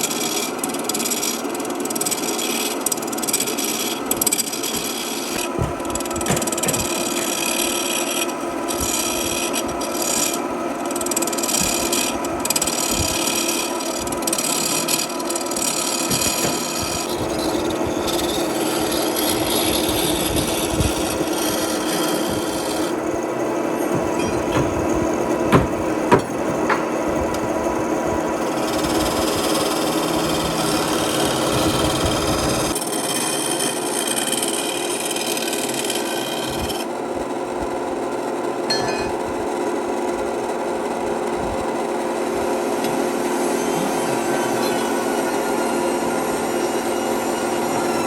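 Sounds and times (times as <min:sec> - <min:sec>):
power tool sanding wood: 0:00.1 - 0:37.0, 0:42.1 - 0:48.0
sharp knocks: 0:04.7 - 0:07.6, 0:11.4 - 0:14.9, 0:15.5 - 0:32.7.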